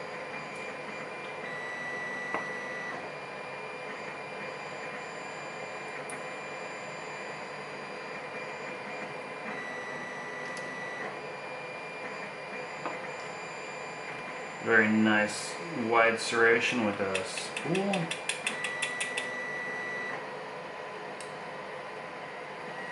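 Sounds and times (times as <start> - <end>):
background hum and hiss: 11.8 - 22.9.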